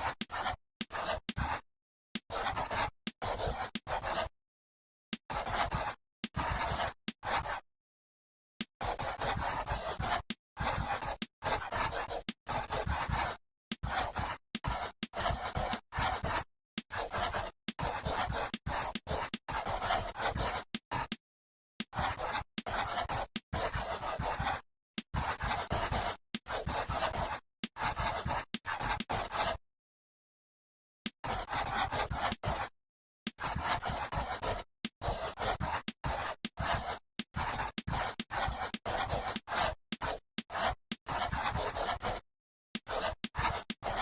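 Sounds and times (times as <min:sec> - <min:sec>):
pencil writing on paper: 0:00.0 - 0:01.6, 0:02.2 - 0:04.3, 0:05.1 - 0:07.6, 0:08.6 - 0:21.2, 0:21.8 - 0:29.6, 0:31.1 - 0:32.7, 0:33.3 - 0:42.2, 0:42.8 - 0:44.0.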